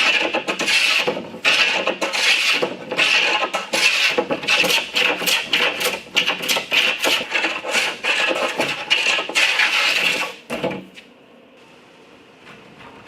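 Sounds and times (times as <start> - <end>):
metal hand tool scraping wood: 0.0 - 10.4.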